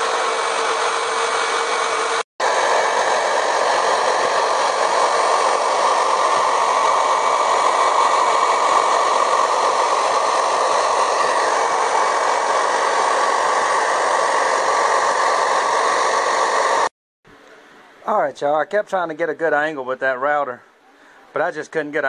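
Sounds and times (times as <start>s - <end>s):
electric wood router running: 0.0s - 16.9s.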